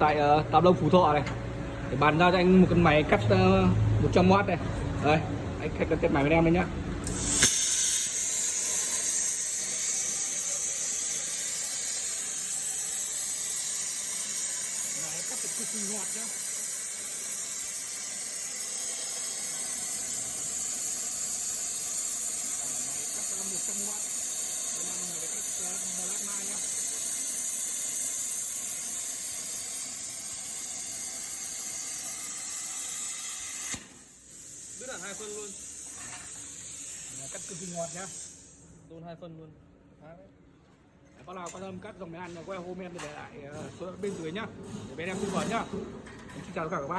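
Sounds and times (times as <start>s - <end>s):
plasma cutter hissing: 7.0s - 38.8s.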